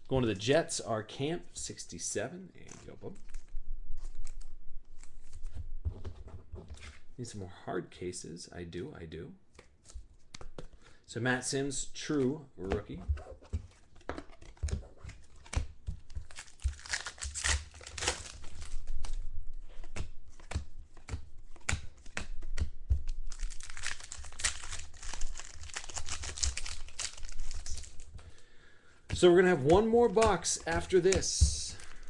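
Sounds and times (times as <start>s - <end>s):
foil wrappers torn and crinkled: 16.2s - 19.0s, 23.2s - 28.1s
cards clicking: 29.1s - 32.0s.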